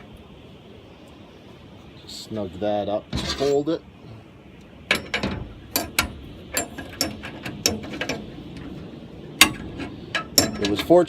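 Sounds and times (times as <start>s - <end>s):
metal tool clicking on nut: 4.9s - 8.8s, 9.4s - 11.0s.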